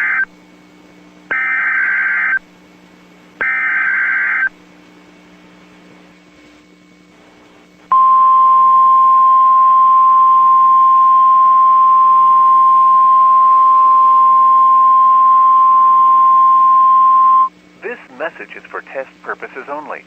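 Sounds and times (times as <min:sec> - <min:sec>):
loud steady warning alarm tone: 0:00.0 - 0:00.3, 0:01.3 - 0:02.5, 0:03.4 - 0:04.6, 0:07.9 - 0:17.5.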